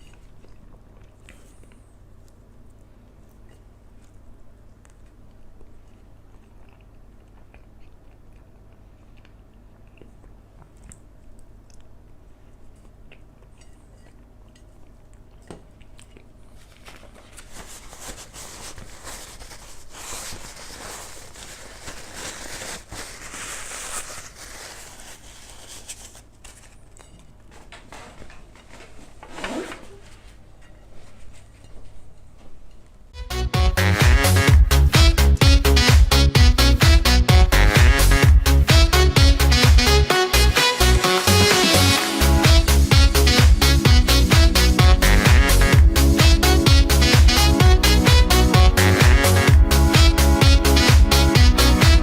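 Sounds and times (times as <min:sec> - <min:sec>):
person chewing: 0:00.0 - 0:17.2
low electrical hum: 0:00.0 - 0:41.2
rustling: 0:16.4 - 0:33.0.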